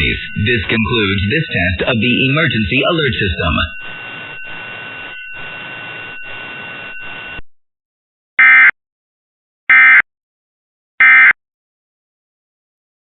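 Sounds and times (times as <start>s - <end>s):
digital data tone bursts: 0.0s - 7.4s
faint steady tones: 0.0s - 7.4s
radio static hiss: 0.0s - 7.4s.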